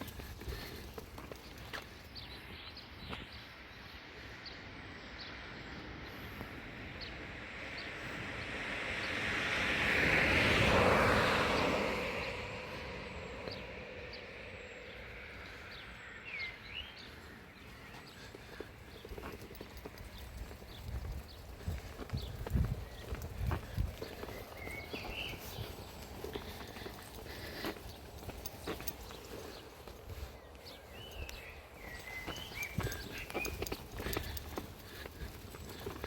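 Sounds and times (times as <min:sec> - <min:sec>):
small birds chirping: 0:00.0 - 0:08.2, 0:11.6 - 0:36.0
vehicle passing by: 0:05.3 - 0:30.4.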